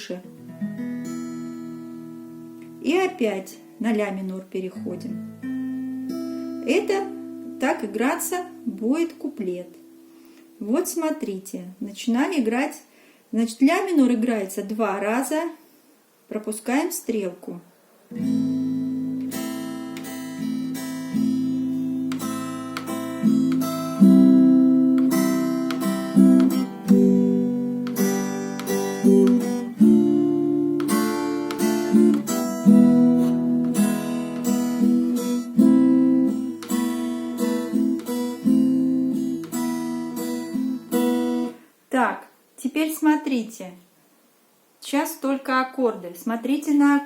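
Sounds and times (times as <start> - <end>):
acoustic guitar strumming: 0.3 - 3.1, 4.8 - 10.6, 18.1 - 41.6.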